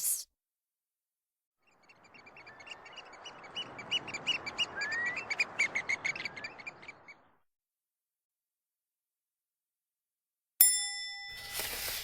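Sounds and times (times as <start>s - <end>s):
birds chirping: 1.6s - 7.4s.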